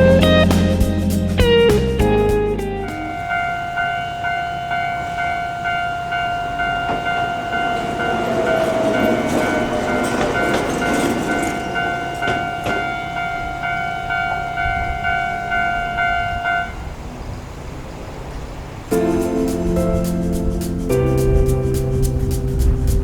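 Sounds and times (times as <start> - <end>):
electric train rumbling: 0.0 - 23.0
level-crossing warning bell: 3.0 - 18.1.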